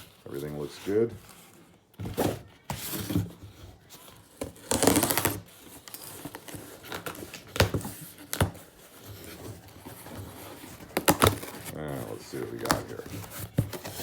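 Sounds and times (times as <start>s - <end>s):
cardboard clicks and knocks: 6.0s - 11.8s.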